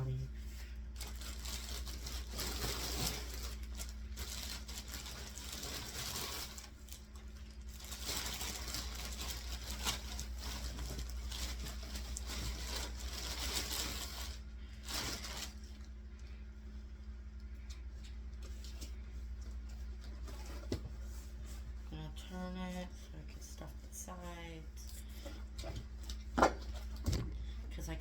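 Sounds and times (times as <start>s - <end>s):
stuffing rustling and crinkling: 0.0s - 28.0s.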